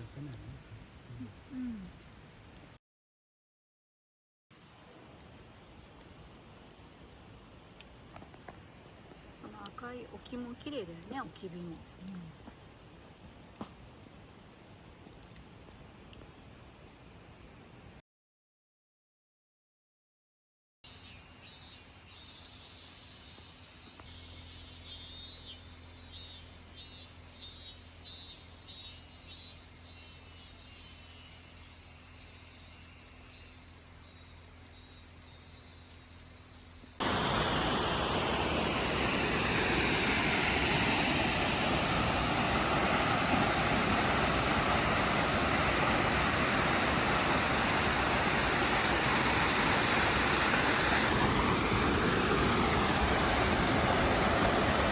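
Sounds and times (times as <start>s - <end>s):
waterfall rushing: 37.0s - 54.9s.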